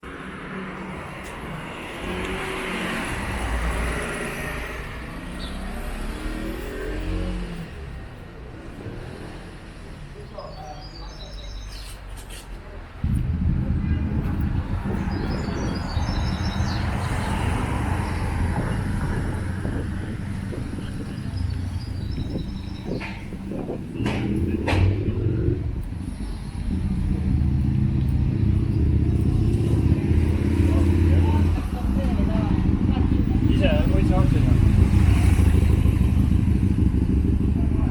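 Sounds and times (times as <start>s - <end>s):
street ambience: 0.0s - 37.9s
car passing: 0.2s - 10.2s, 12.9s - 37.9s
low rumble: 13.0s - 37.9s.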